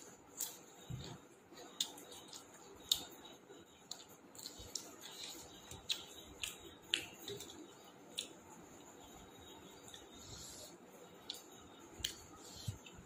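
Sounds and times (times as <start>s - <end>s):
chewing with crisp crunches: 0.3s - 13.0s.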